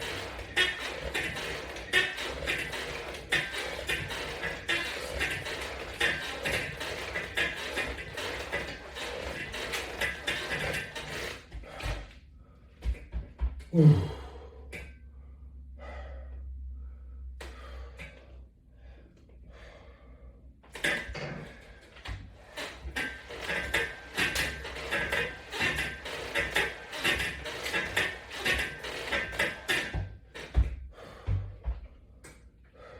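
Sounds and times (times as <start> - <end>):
exercise equipment clicking and rattling: 0.0 - 12.2, 12.8 - 15.0, 20.6 - 32.5.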